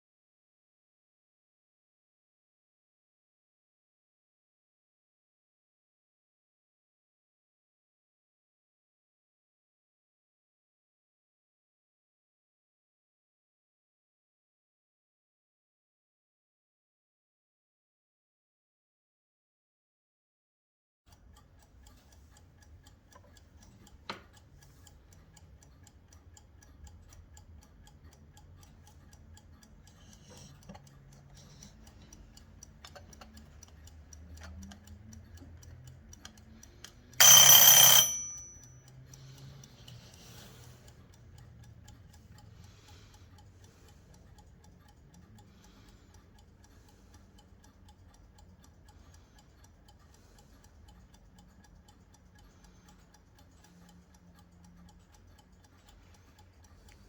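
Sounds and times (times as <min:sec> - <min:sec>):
click: 0:21.1 - 0:25.0
alarm clock ticking: 0:21.1 - 0:57.0
alarm clock ringing: 0:37.2 - 0:38.8.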